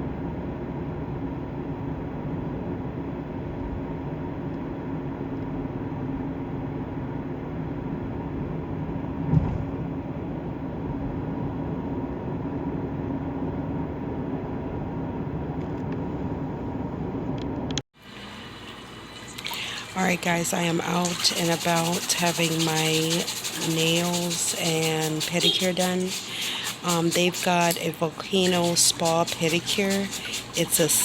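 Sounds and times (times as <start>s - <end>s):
car cabin road and engine noise: 0.0s - 17.8s
thump: 9.2s - 9.8s.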